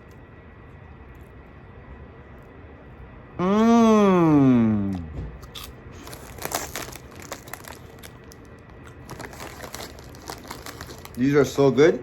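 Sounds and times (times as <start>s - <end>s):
snack bag crinkling: 5.4s - 11.8s.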